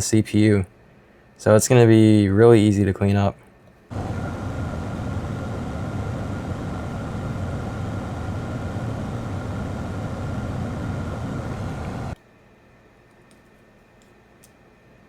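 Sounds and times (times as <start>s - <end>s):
hot air station blowing: 3.9s - 12.2s.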